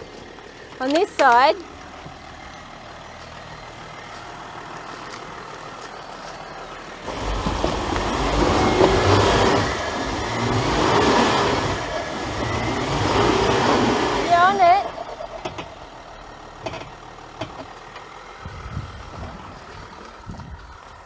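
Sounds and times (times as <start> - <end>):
car driving over muddy track: 0.0 - 15.9
car engine low hum: 0.0 - 21.0.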